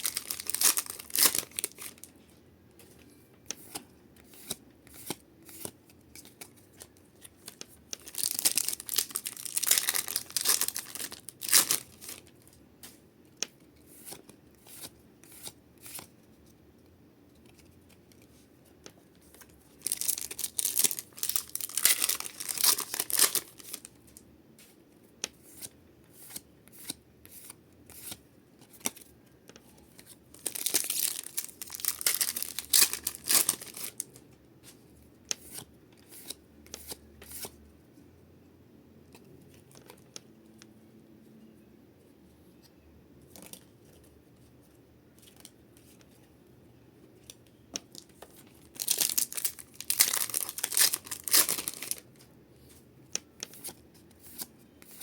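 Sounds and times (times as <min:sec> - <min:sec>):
foil packs tearing and crinkling: 0:00.0 - 0:01.8, 0:19.8 - 0:23.8, 0:30.4 - 0:34.0, 0:48.8 - 0:52.0.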